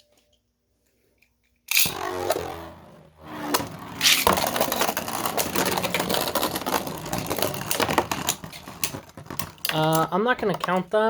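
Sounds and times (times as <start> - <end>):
spinning tops clattering: 1.7 - 10.1
spinning tops launching crack: 1.7 - 10.1.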